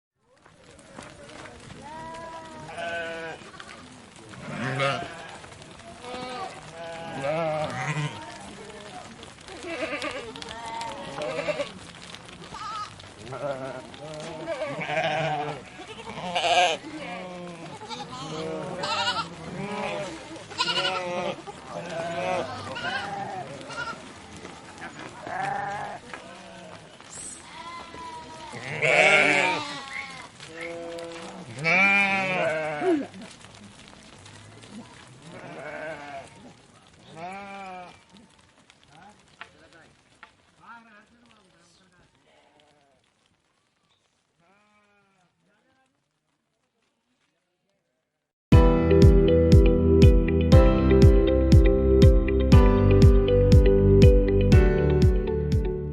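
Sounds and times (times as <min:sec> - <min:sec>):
sheep bleating: 0:01.8 - 0:03.5, 0:04.4 - 0:08.5, 0:09.6 - 0:11.8, 0:12.6 - 0:24.0, 0:25.2 - 0:33.1, 0:35.3 - 0:36.4, 0:37.1 - 0:38.0.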